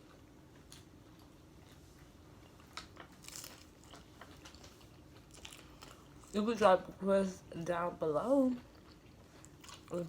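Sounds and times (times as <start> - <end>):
crunching and chewing chips: 0.0 - 6.4, 8.5 - 10.0.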